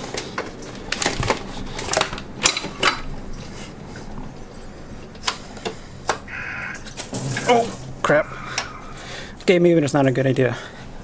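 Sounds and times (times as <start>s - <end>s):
clicks and knocks on engine parts: 0.0s - 3.5s.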